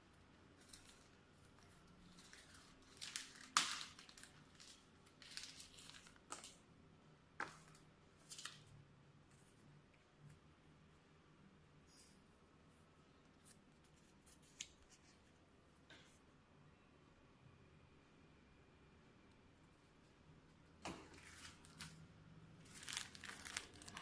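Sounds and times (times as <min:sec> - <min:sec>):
packaging rustling and tearing: 0:00.6 - 0:06.6, 0:21.1 - 0:22.0, 0:22.6 - 0:24.0.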